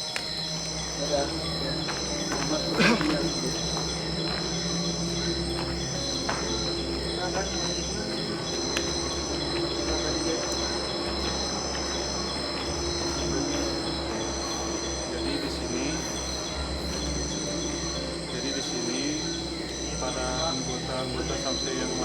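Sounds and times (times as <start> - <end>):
insects trilling: 0.0 - 22.0
low steady hum: 0.0 - 22.0
pulsed insect call: 0.0 - 22.0
faint clicks: 8.7 - 12.0.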